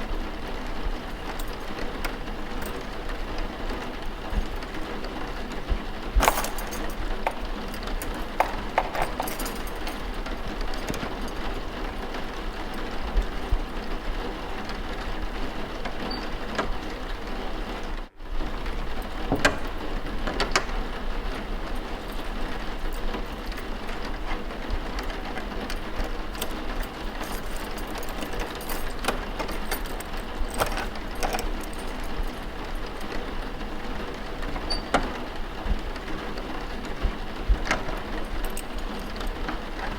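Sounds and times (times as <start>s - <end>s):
steady rain: 0.0s - 6.2s, 7.0s - 39.9s
light clicks and knocks: 6.2s - 13.8s, 19.1s - 39.9s.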